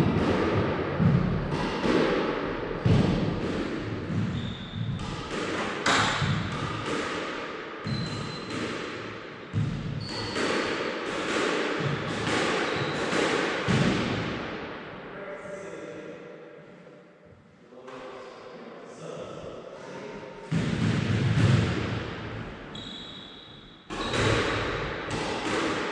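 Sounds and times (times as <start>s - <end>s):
squash racket hitting ball: 0.0s - 14.9s, 20.5s - 25.9s.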